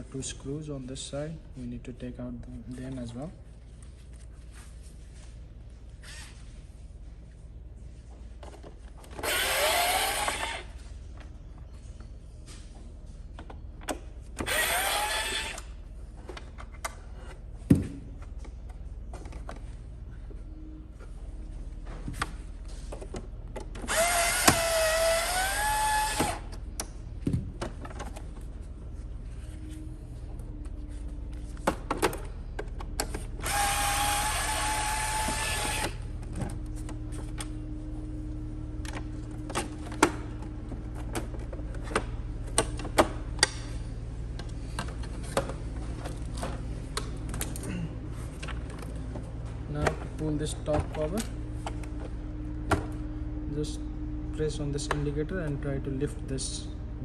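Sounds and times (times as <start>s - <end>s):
power screwdriver motor whine: 9.2s - 10.7s, 14.4s - 15.7s, 23.8s - 26.6s, 33.4s - 36.0s.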